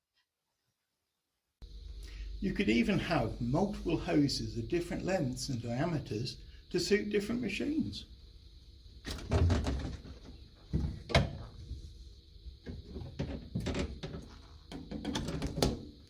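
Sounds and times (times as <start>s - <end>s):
hose fittings knocking and clacking: 12.7s - 15.8s.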